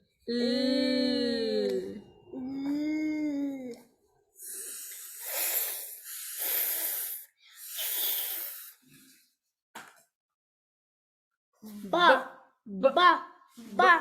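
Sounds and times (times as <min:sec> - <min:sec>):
person making hissing f sound: 0:04.4 - 0:08.8.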